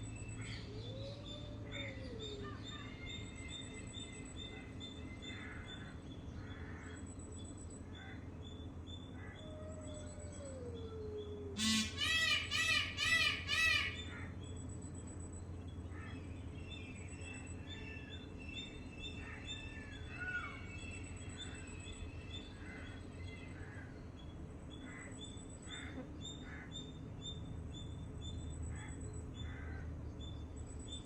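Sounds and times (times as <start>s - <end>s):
low background hum: 0.0s - 31.0s
harsh rasping bird calls: 11.6s - 14.3s.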